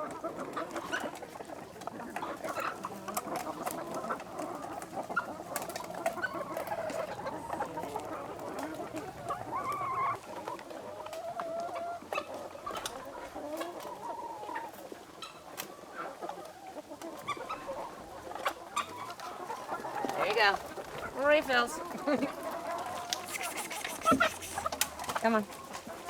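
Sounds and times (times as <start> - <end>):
hens clucking and calling: 0.0 - 26.0.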